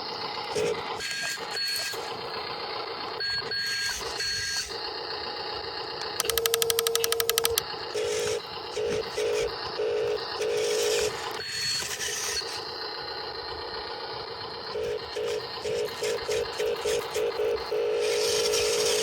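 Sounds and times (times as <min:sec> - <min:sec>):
small electric motors whining: 0:06.0 - 0:12.7, 0:14.8 - 0:19.0
rapid buzzing tone: 0:06.1 - 0:07.6
short electronic beeps: 0:06.1 - 0:07.6.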